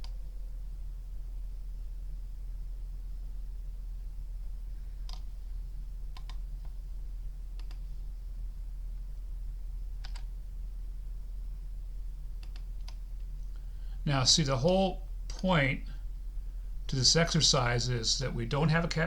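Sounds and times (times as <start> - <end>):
low electrical hum: 0.0 - 19.0
mouse and keyboard clicks: 7.6 - 7.8, 10.0 - 10.3.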